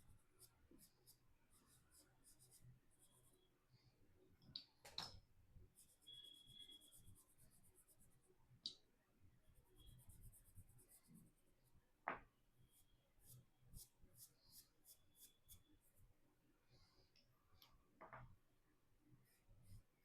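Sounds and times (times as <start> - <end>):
pastel scratching on paper: 0.0 - 3.5, 5.7 - 8.3, 9.6 - 11.5, 12.7 - 16.0.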